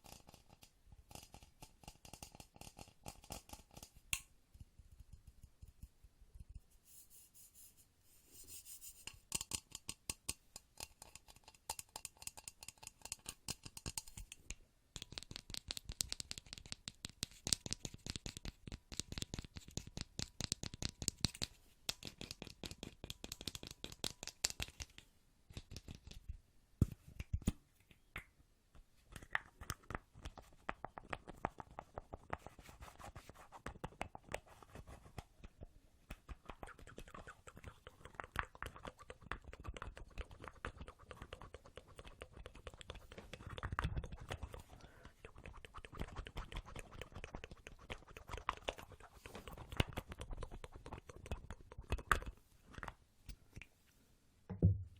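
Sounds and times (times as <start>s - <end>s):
close tapping and scratching: 8.6s - 27.5s, 29.2s - 53.0s.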